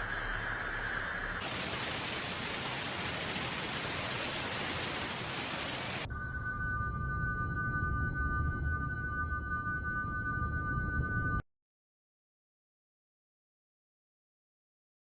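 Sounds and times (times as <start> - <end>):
hiss: 0.0 - 6.1
high-pitched whine: 6.0 - 11.4
pure tones: 6.1 - 11.4.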